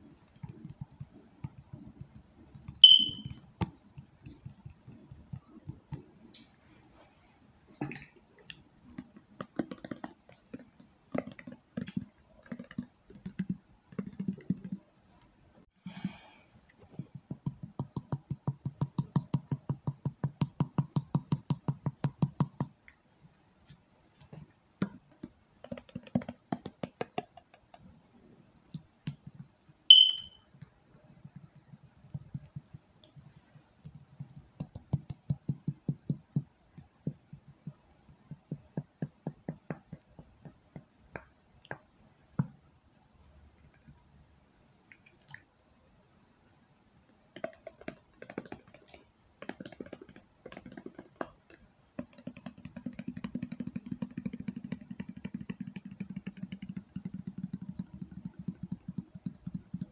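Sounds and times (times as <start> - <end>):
fingertips tapping on objects: 0.1 - 6.6, 7.9 - 14.9, 16.8 - 23.0, 24.2 - 27.8, 28.7 - 42.6, 47.3 - 59.9
high ringing ping: 2.8 - 3.4, 29.9 - 30.4.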